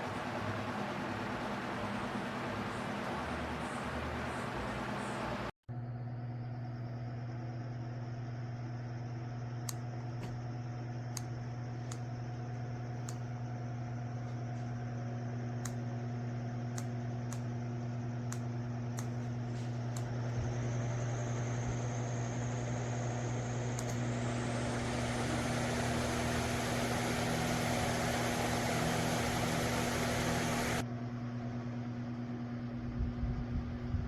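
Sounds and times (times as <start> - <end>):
pedestal fan running: 0.0 - 5.5, 6.2 - 34.0
thin high whine: 18.3 - 30.8.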